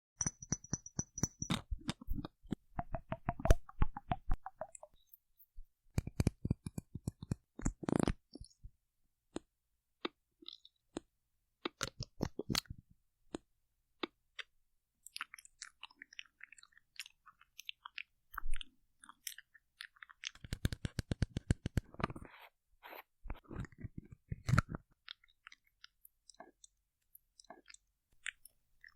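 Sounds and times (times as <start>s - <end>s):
small moist clicks and crackles: 5.9s - 8.7s, 9.3s - 22.4s, 23.3s - 28.9s.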